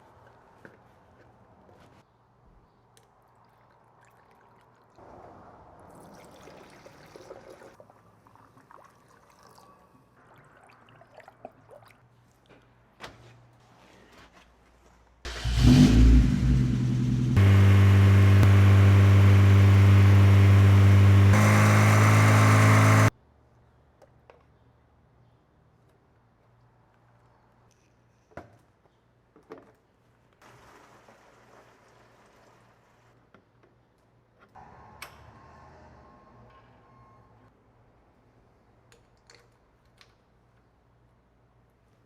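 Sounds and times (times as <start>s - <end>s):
car engine starting and idling: 15.3s - 23.1s.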